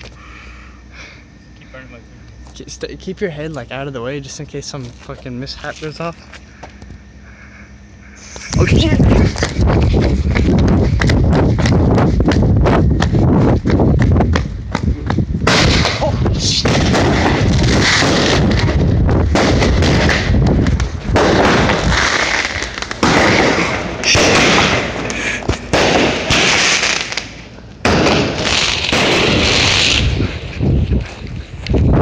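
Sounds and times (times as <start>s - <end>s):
firework bangs: 15.4s - 30.6s
firework hissing crackle: 15.4s - 30.8s.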